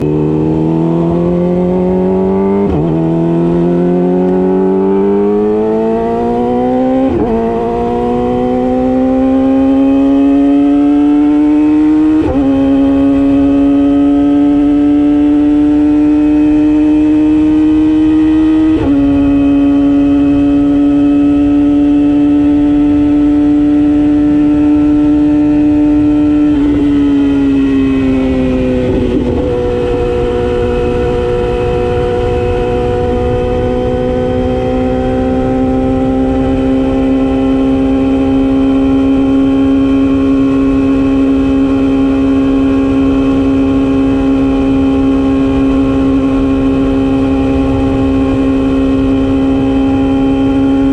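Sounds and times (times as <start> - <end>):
motorcycle engine at high revs: 0.0 - 50.9.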